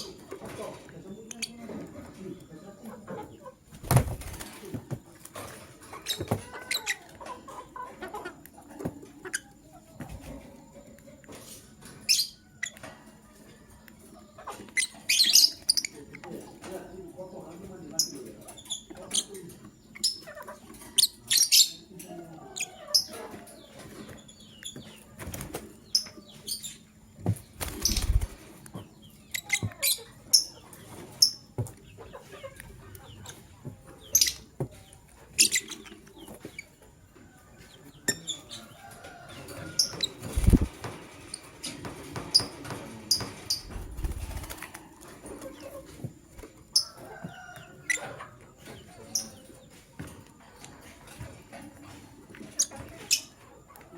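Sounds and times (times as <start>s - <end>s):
birds chirping: 0.0s - 11.1s, 13.5s - 50.2s
low thuds or wing flutters: 40.2s - 40.8s.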